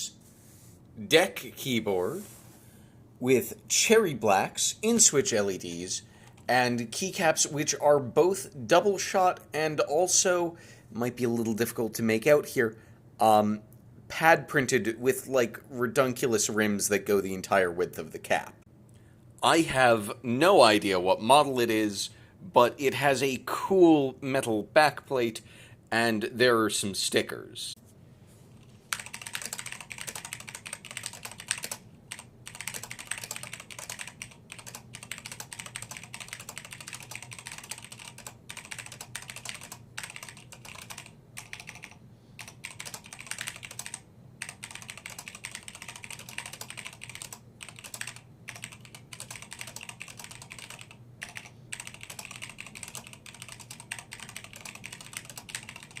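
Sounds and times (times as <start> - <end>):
mechanical keyboard typing: 28.9 - 56.0.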